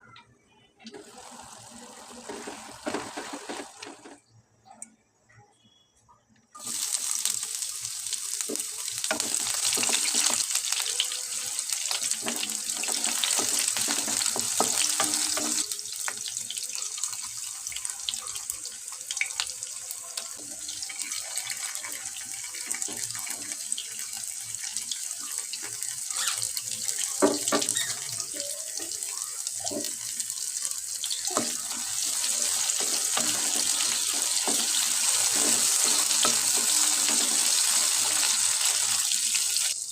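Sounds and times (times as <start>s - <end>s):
tap water running into sink: 0.9s - 4.2s, 6.6s - 39.7s
knocks and clatter of handled things: 2.3s - 4.2s.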